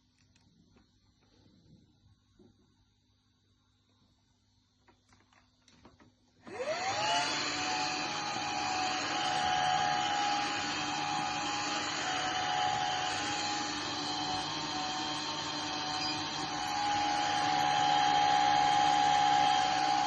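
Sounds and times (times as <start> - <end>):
floor vacuum motor whining: 6.4 - 20.0.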